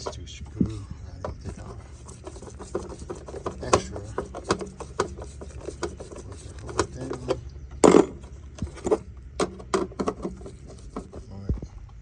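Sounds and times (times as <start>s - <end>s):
loud metal clank: 7.8s - 8.2s
metal tools clinking and clattering: 7.8s - 9.0s.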